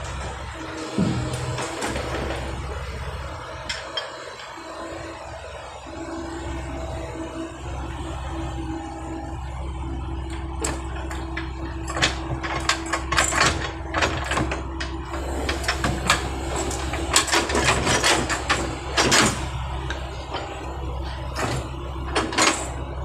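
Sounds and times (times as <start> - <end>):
metallic clanks and knocks: 0.0 - 2.6, 10.3 - 20.6, 21.2 - 22.8
diesel engine running: 0.0 - 23.0.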